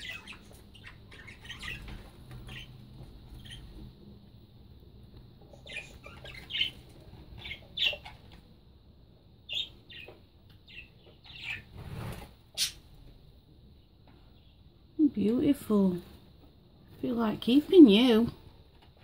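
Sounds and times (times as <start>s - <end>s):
budgerigars chirping: 0.0s - 2.8s, 3.4s - 3.7s, 5.5s - 8.4s, 9.5s - 11.7s.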